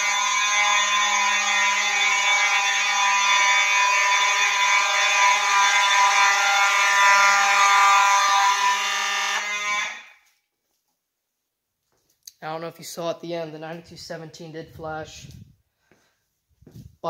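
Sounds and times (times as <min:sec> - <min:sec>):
fire alarm horns blaring: 0:00.0 - 0:10.3.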